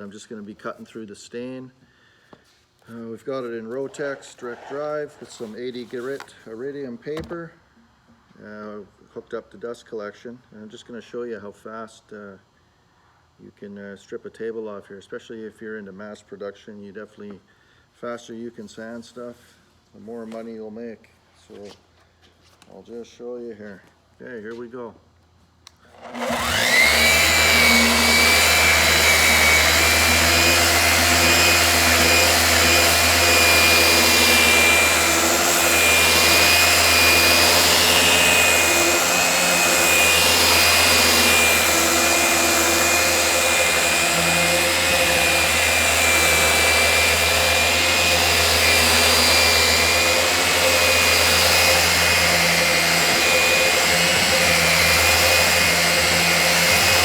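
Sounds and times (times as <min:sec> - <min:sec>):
sander whining: 0:25.9 - 0:57.0
dust extractor humming: 0:26.0 - 0:57.0.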